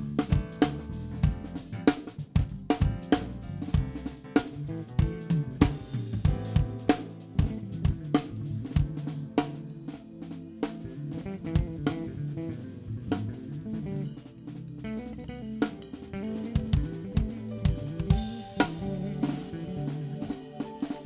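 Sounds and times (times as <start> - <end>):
drum kit groove: 0.0 - 21.0
electric bass guitar notes: 0.0 - 21.0.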